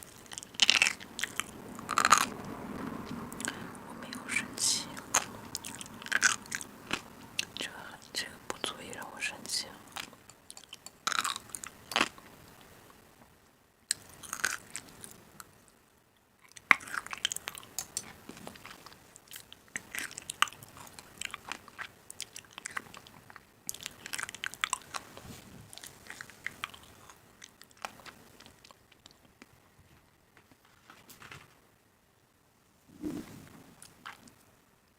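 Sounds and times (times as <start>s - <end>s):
crisp crunching and clicking: 0.0s - 2.3s, 9.9s - 12.2s, 13.9s - 15.2s.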